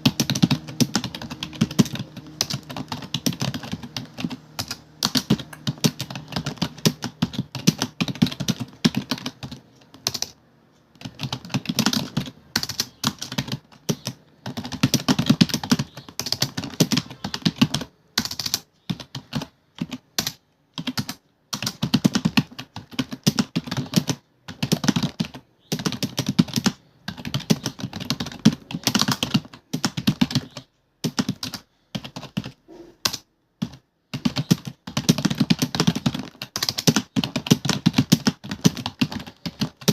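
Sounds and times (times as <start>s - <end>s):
computer keyboard typing: 0.0s - 39.9s.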